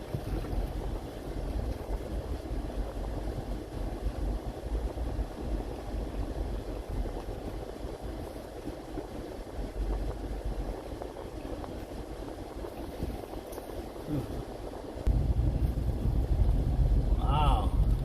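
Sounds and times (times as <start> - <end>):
vehicle driving on wet road: 0.0 - 18.0.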